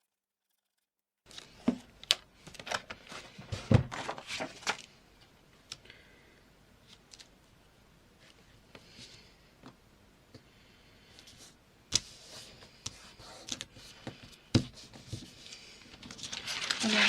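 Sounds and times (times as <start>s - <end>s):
paper rustling: 1.3s - 5.0s, 14.9s - 17.0s.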